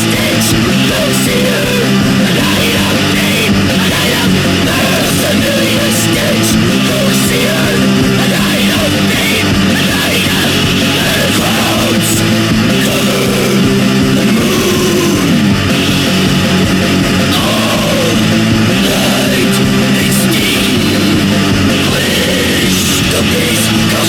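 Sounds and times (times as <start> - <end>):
distorted electric guitar chords: 0.0 - 24.0
drums: 0.0 - 24.0.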